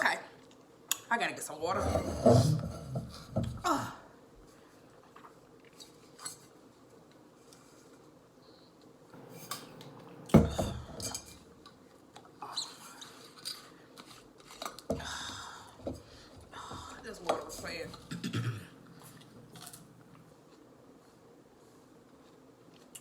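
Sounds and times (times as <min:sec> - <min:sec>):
dishes and utensils clinking: 0:09.2 - 0:11.6.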